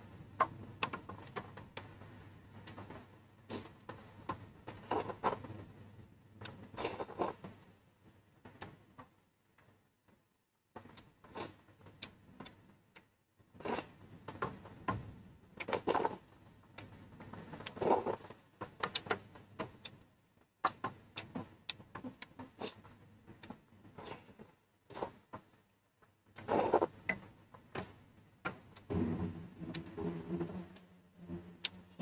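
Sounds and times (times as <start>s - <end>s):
slurping: 4.8s - 5.5s, 13.6s - 14.0s, 15.6s - 16.2s, 17.6s - 19.0s, 26.4s - 27.0s.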